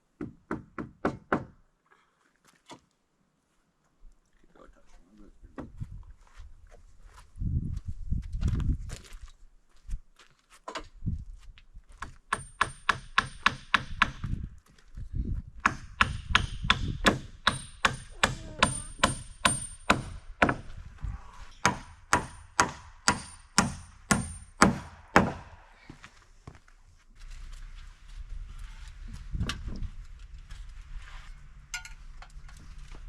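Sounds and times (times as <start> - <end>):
hammer driving nails into wood: 0.2 - 1.6, 12.3 - 14.3, 15.6 - 20.7, 21.6 - 25.7.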